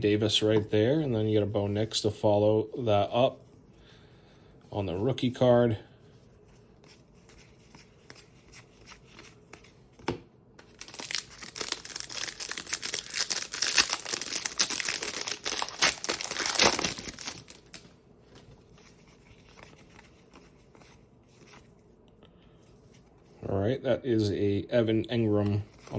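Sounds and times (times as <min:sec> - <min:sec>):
foil wrapper crinkling: 0:10.6 - 0:17.9.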